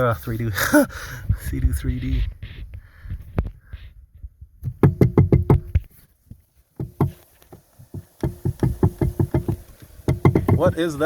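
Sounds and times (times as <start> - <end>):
rapid knocking rattle: 4.7 - 5.7, 6.8 - 11.0.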